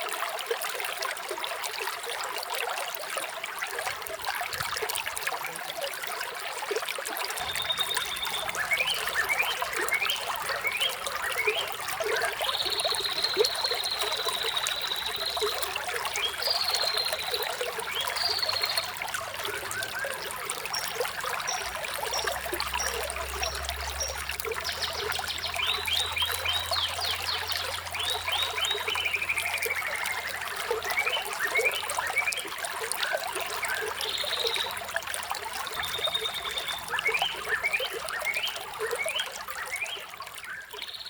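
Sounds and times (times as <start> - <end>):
stream trickling and splashing: 0.0 - 41.0
songbirds chirping and trilling: 7.4 - 32.4.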